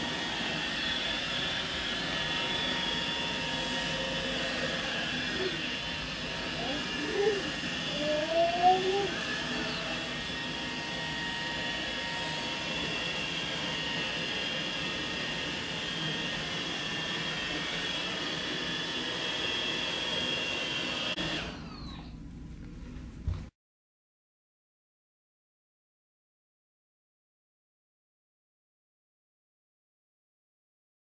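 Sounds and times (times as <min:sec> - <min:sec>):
robot vacuum whirring and whining: 0:00.0 - 0:22.2.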